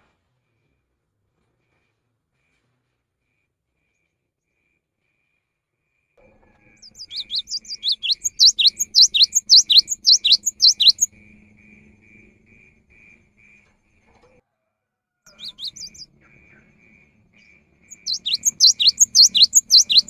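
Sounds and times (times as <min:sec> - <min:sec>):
bird singing sharp repeated notes: 0:06.8 - 0:13.6, 0:15.3 - 0:20.0.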